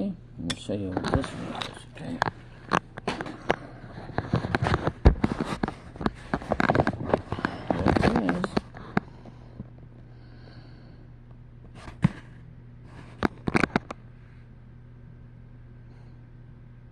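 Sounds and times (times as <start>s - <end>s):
steady low hum: 0.0s - 16.9s
handling noise clicks and crackles: 2.0s - 9.0s, 13.1s - 14.0s.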